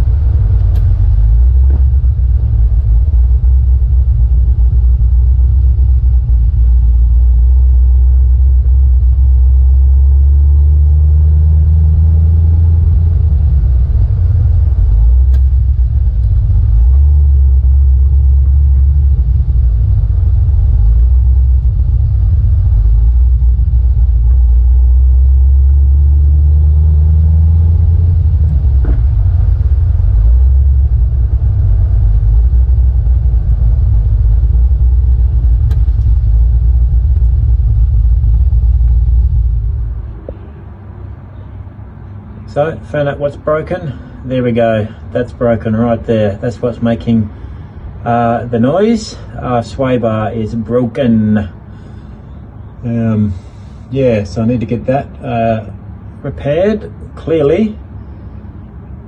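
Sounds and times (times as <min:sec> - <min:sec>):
tyre and road rumble: 0:00.0 - 0:59.0.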